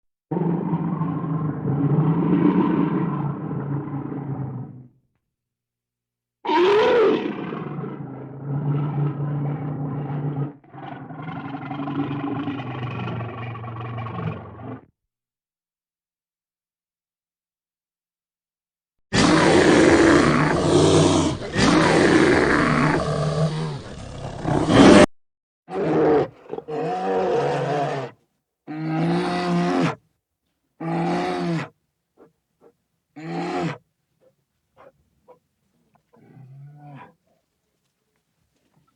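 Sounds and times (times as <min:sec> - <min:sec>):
bear roaring and growling: 0:00.3 - 0:05.0, 0:06.5 - 0:14.9, 0:19.1 - 0:25.1, 0:25.7 - 0:30.0, 0:30.8 - 0:33.8, 0:34.8 - 0:37.2.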